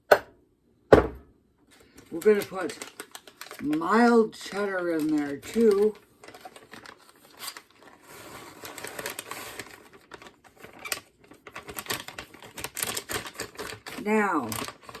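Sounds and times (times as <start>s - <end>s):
shredded cheese crinkling and rustling: 1.8s - 15.0s.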